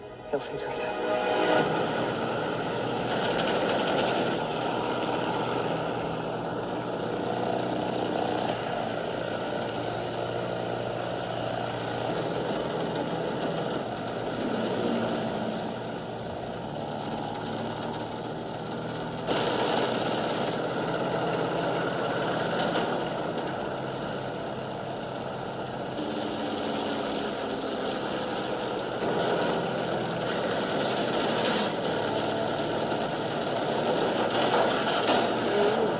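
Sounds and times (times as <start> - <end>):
aircraft engine drone: 0.0 - 7.0.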